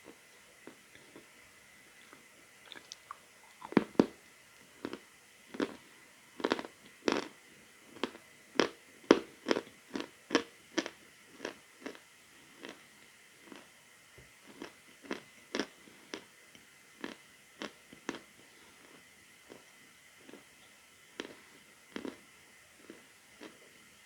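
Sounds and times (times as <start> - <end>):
chalk crunching while chewing: 2.0 - 5.8, 6.4 - 12.8, 14.4 - 16.3, 17.0 - 20.5, 21.2 - 23.6.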